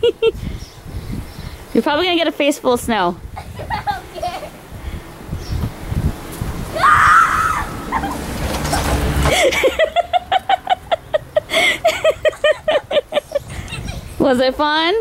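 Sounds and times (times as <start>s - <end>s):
child laughing: 3.3s - 4.6s, 7.4s - 14.2s
child shrieking: 6.8s - 8.2s.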